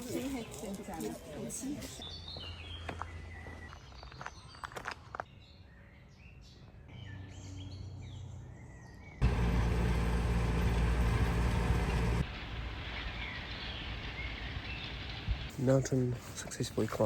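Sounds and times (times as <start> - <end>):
small birds chirping: 0.1 - 12.2, 12.9 - 17.0
wind rumbling on microphone: 11.2 - 15.6.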